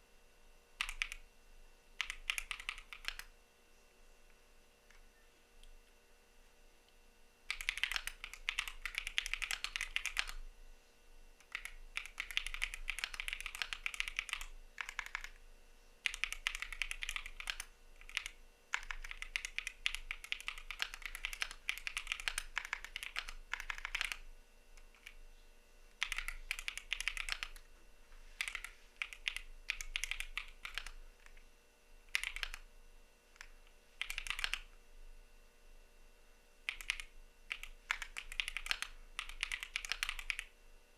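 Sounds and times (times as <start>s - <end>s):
mechanical keyboard typing: 0.8s - 1.2s, 2.0s - 3.3s, 7.5s - 10.4s, 11.4s - 15.4s, 16.0s - 24.2s, 24.8s - 25.2s, 25.9s - 27.7s, 28.4s - 31.4s, 32.1s - 32.7s, 33.4s - 34.7s, 36.7s - 40.5s.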